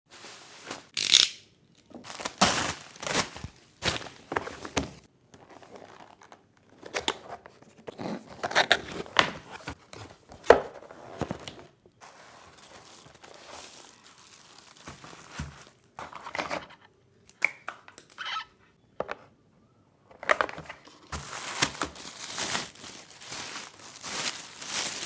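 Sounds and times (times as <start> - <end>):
packaging rustling and tearing: 2.0 - 10.1, 11.1 - 15.9, 20.9 - 25.0.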